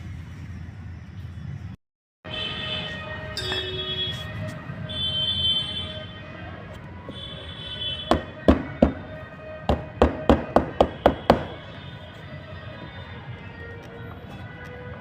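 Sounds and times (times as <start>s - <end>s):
background music: 2.3s - 15.0s
sharp knocks: 8.1s - 9.0s, 9.7s - 11.6s.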